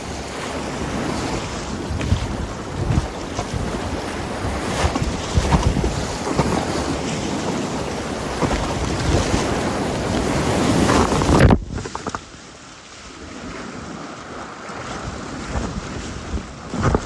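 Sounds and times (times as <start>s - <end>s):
river water rushing: 0.0s - 11.5s
wind noise on microphone: 0.0s - 12.4s, 13.1s - 17.0s.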